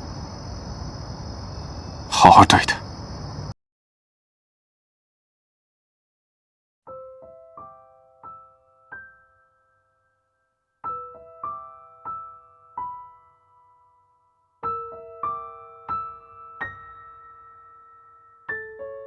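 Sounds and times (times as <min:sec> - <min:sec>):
soft solo piano: 0:06.9 - 0:10.0, 0:10.8 - 0:19.0.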